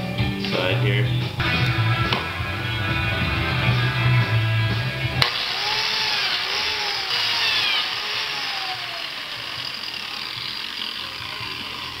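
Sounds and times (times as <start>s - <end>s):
background music: 0.0s - 5.4s
biscuit joiner motor cutting: 5.2s - 12.0s.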